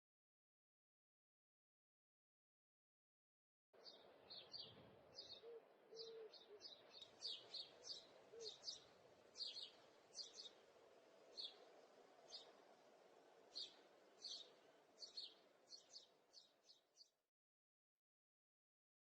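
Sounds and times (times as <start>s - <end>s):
faint bird chirps: 3.8s - 10.6s.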